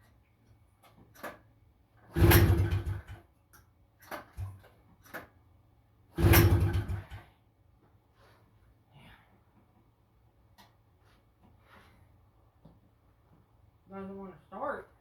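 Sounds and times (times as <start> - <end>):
recoil starter pulls: 1.1 - 3.3, 6.1 - 7.3
engine turning over: 2.1 - 3.2, 6.2 - 7.3.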